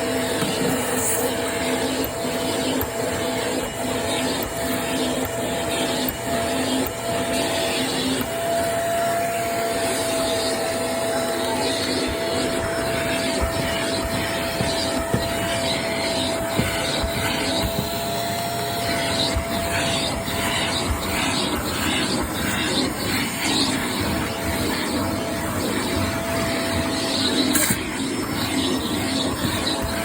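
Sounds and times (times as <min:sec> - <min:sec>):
vacuum cleaner running: 0:00.0 - 0:30.0.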